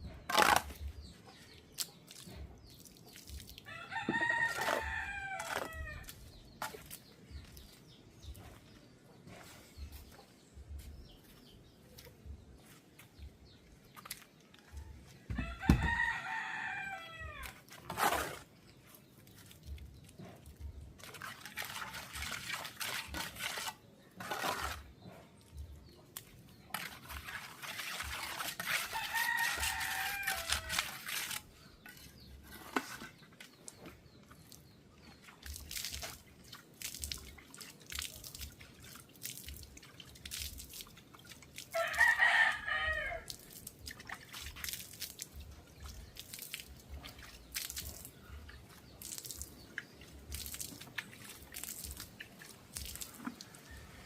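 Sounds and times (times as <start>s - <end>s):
rooster crowing: 15.3s - 17.5s.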